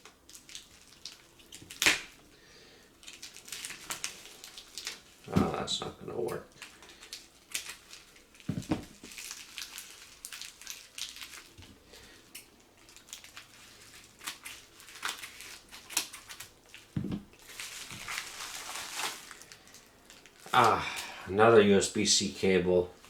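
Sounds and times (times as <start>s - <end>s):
package being torn and crinkled: 0.0s - 2.3s, 3.0s - 21.1s
dull bump: 8.5s - 9.0s, 17.0s - 17.3s.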